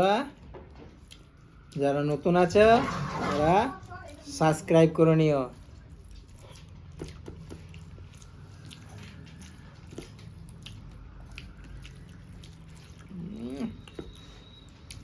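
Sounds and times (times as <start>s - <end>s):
chewing: 0.9s - 2.2s, 5.5s - 15.0s
wet squishing of rice mixed by hand: 1.0s - 15.0s.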